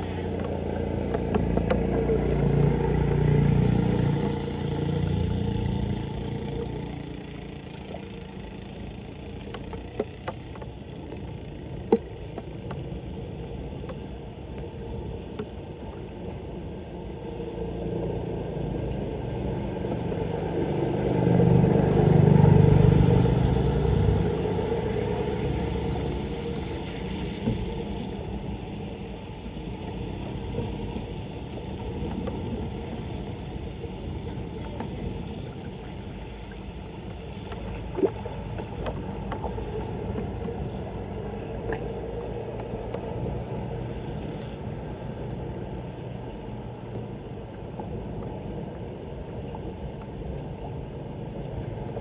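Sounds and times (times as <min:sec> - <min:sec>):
vehicle engine rumble passing: 0:00.0 - 0:10.0, 0:17.4 - 0:47.0.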